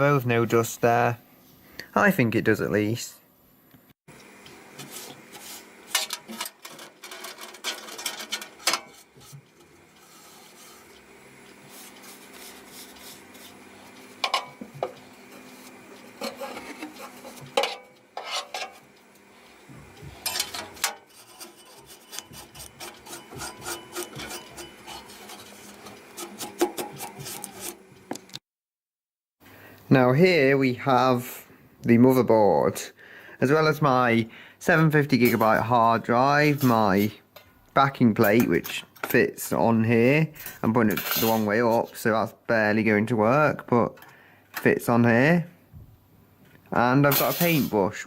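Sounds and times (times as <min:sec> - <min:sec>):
brush scrubbing inside computer case: 0:04.6 - 0:18.8, 0:20.1 - 0:28.1.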